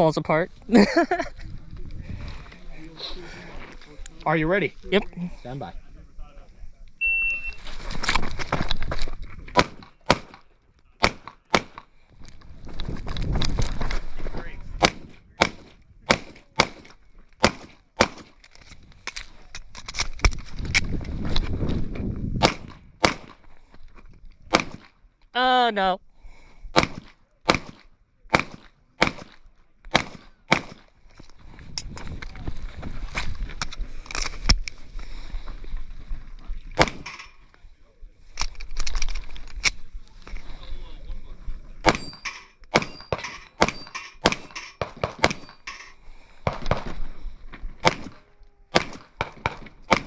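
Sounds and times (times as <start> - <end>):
rustle of movement: 0.9 - 9.6
airsoft pistol shots: 11.0 - 11.8, 22.4 - 23.4, 24.5 - 24.9, 26.8 - 29.3, 29.9 - 30.8, 41.9 - 45.5, 47.8 - 50.0.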